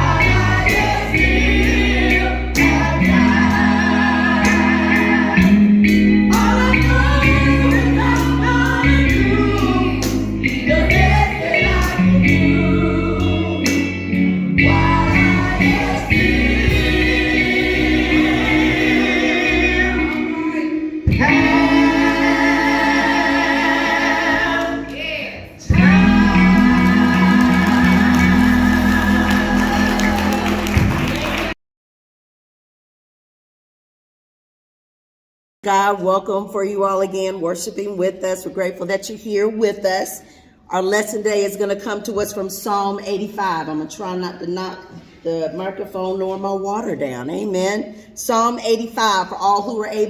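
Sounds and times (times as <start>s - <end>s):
instrumental accompaniment with bass: 0.0s - 25.0s, 25.6s - 31.6s
voices singing gospel music: 0.0s - 31.6s.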